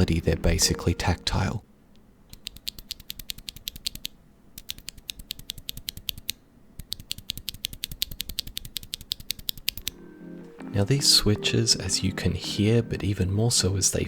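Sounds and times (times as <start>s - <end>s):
mechanical keyboard typing: 2.4s - 10.0s.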